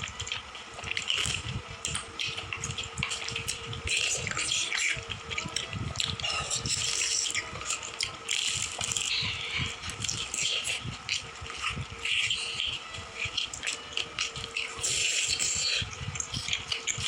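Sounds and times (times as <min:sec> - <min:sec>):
chewing and crunching: 0:00.0 - 0:17.0.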